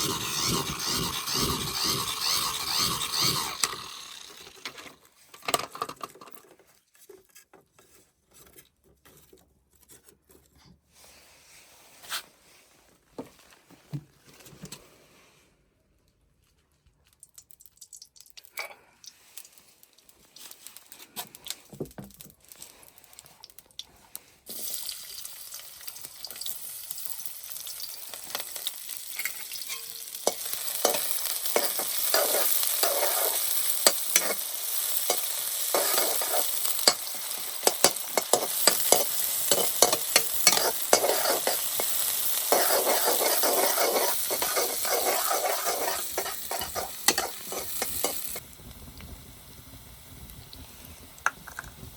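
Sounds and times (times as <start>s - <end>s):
food sizzling in a pan: 0.0s - 5.0s, 24.5s - 51.9s
spoon scraping and knocking pan: 29.2s - 48.4s.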